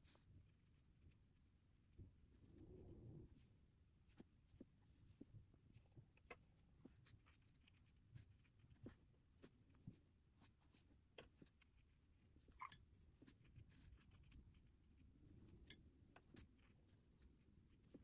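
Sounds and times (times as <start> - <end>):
brush tapping and scratching paper: 4.0 - 18.0.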